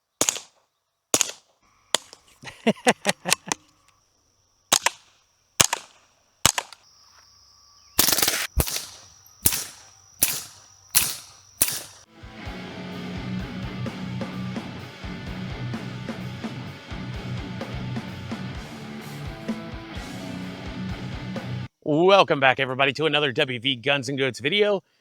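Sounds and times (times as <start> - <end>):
rifle gunshots: 0.2 - 2.2, 4.7 - 6.8, 8.0 - 12.1
strummed guitar music: 12.1 - 21.7.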